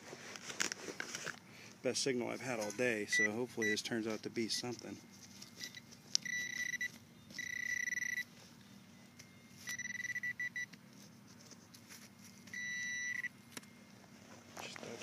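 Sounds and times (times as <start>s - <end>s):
metal detector beeping: 2.7s - 8.4s, 9.0s - 10.8s, 12.4s - 13.9s.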